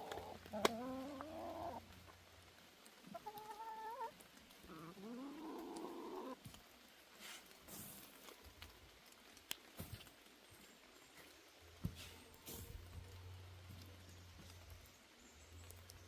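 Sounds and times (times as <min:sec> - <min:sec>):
hens calling: 0:00.0 - 0:02.2, 0:02.9 - 0:06.4.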